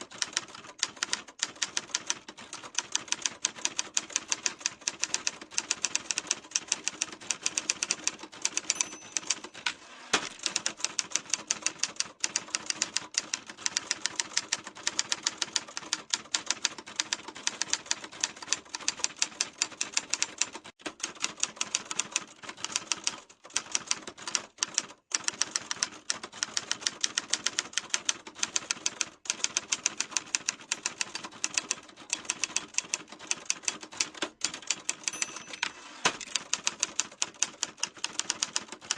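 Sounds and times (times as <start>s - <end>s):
typewriter key strikes: 8.5s - 10.7s, 34.5s - 36.7s.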